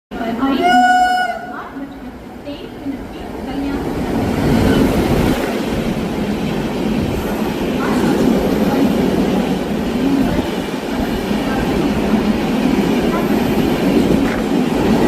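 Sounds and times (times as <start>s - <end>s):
train wheels rumbling on rails: 0.1s - 15.0s.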